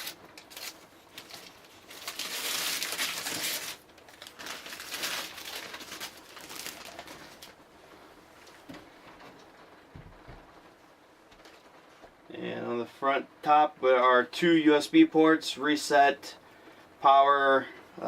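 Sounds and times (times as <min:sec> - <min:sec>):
styrofoam rubbing and squeaking: 0:00.0 - 0:07.5
plastic wrap crinkling: 0:00.0 - 0:07.7.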